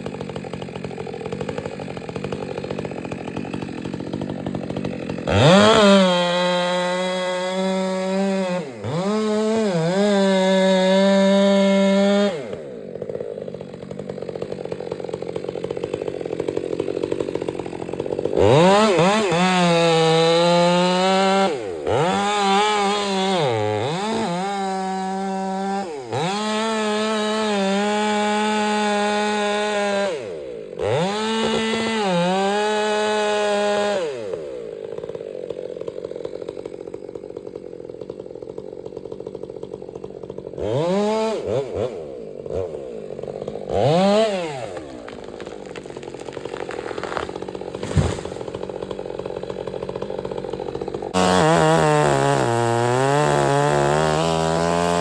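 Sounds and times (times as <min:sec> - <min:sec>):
chainsaw running: 0:00.0 - 0:55.0.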